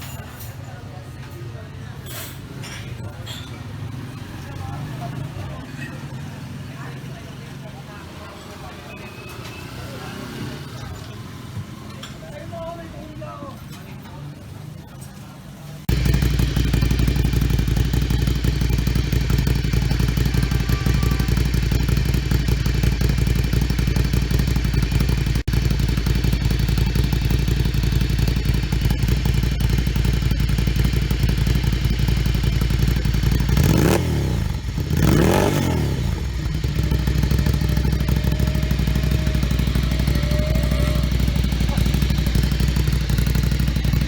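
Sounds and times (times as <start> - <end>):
motorcycle engine revving: 15.8 - 44.0
motorcycle engine idling: 15.9 - 44.0.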